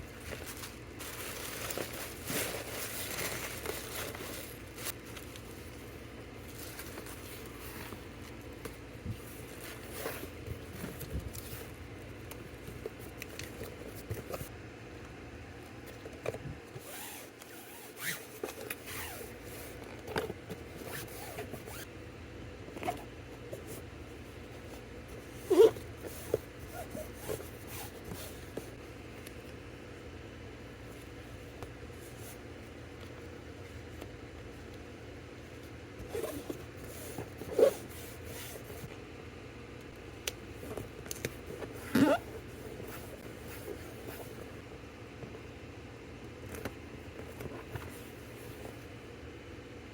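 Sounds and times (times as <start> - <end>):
packaging rustling and scraping: 0.1 - 14.5, 16.8 - 21.9, 24.6 - 28.8, 40.6 - 44.6.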